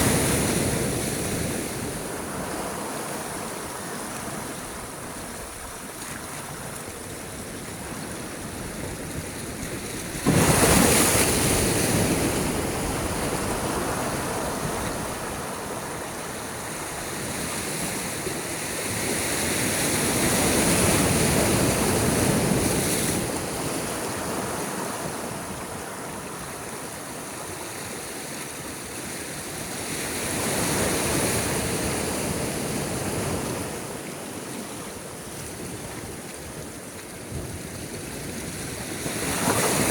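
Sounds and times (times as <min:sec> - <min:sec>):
sea waves crashing: 0:09.4 - 0:27.8
surf swells: 0:09.8 - 0:27.8.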